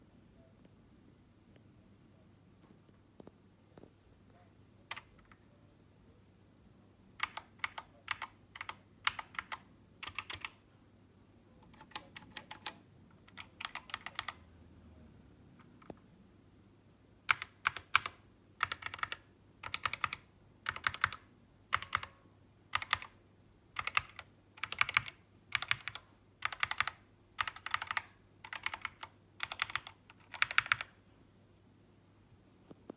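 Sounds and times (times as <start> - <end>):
mechanical keyboard typing: 4.9 - 5.4, 7.2 - 10.6, 11.6 - 14.4, 17.3 - 31.0.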